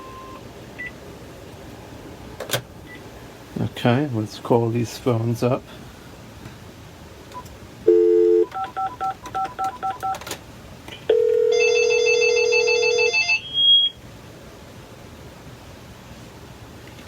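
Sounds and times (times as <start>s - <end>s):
touch-tone keypad beeps: 7.4s - 10.2s
phone ringing: 7.9s - 10.2s, 11.1s - 13.9s
short phone tone: 7.9s - 10.2s, 11.1s - 14.0s.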